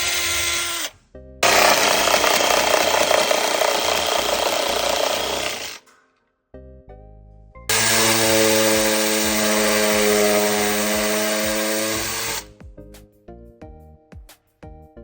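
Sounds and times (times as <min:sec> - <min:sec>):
multi-tool motor running: 0:00.0 - 0:05.9, 0:07.7 - 0:12.5
quiet background music: 0:06.3 - 0:15.0.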